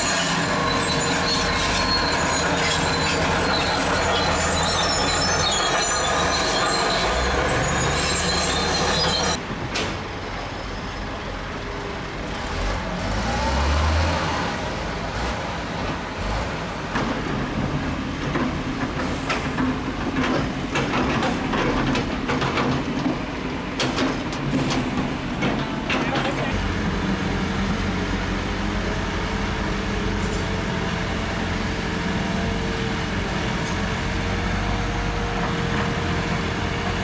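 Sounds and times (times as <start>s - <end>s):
diesel engine revving: 0.0s - 9.4s, 12.0s - 19.6s, 24.5s - 37.0s
steel tracks squealing: 0.0s - 11.2s, 15.2s - 37.0s
tracks clanking: 0.0s - 11.2s, 11.8s - 37.0s.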